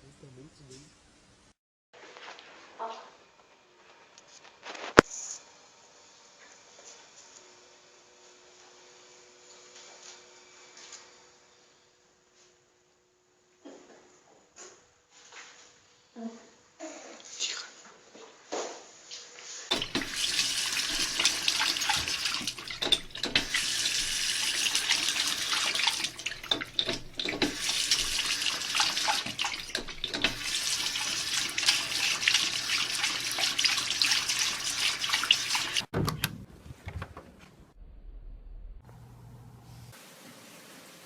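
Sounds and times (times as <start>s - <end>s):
tap water running into sink: 19.7s - 35.9s.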